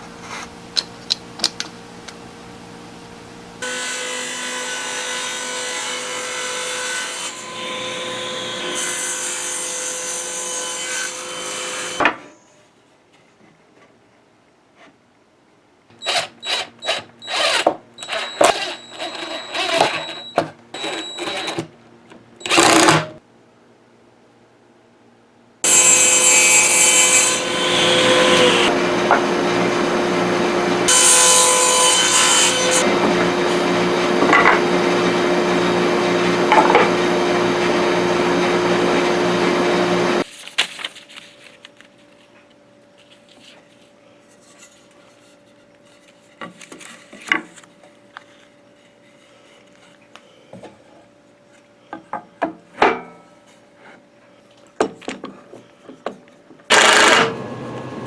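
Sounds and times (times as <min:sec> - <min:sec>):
table saw ripping wood: 0:16.0 - 0:21.7, 0:22.5 - 0:23.2, 0:25.7 - 0:35.2, 0:56.7 - 0:57.6
handling sounds: 0:40.2 - 0:45.2.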